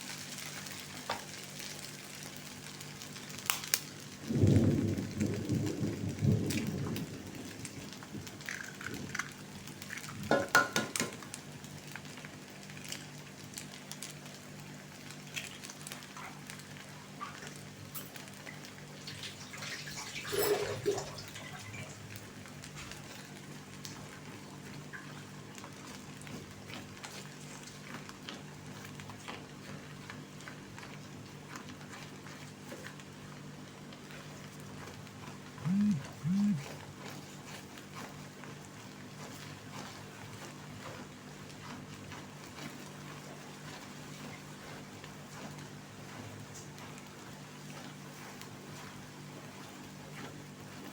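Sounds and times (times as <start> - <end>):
food sizzling in a frying pan: 0.0 - 30.4.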